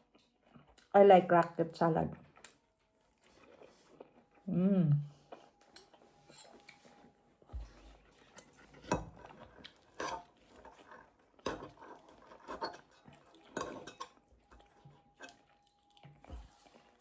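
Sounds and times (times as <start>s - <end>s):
cutlery clinking on plates: 12.4s - 15.4s.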